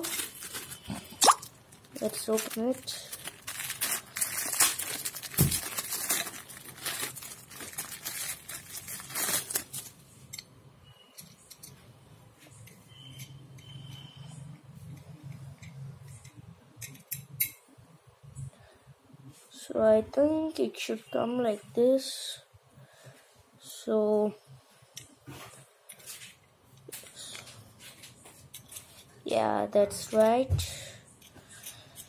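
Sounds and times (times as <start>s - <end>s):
plastic packaging crinkling: 0.0s - 10.0s.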